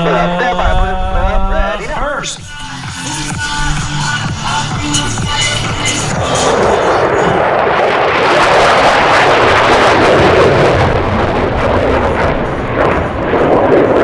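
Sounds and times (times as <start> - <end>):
jet fighters flying past: 0.0 - 14.0.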